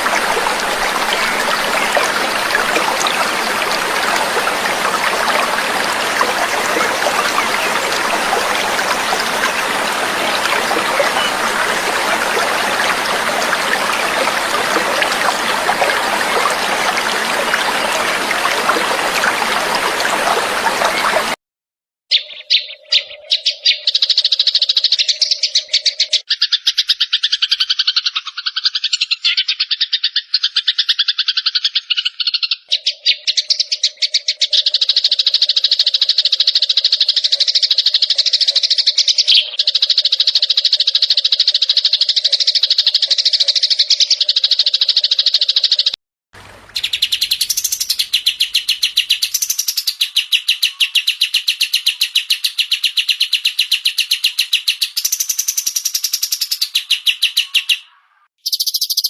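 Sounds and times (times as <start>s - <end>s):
songbird trilling: 46.8s - 59.0s.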